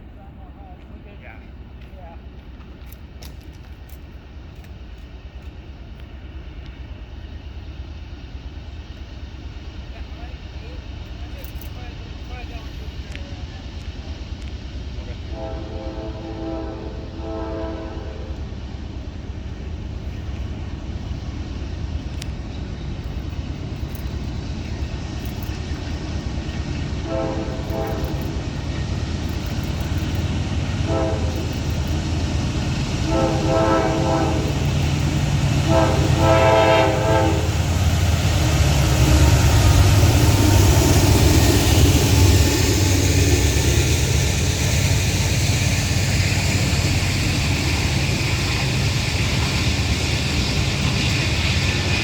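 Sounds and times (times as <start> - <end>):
locomotive engine rumble: 0.0 - 52.0
train horn blasts: 15.3 - 18.4, 27.0 - 28.4, 30.6 - 31.9, 32.8 - 37.8.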